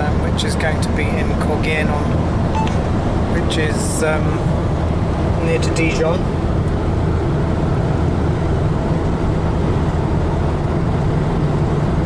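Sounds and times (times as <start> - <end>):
engine and tyre drone: 0.0 - 12.0.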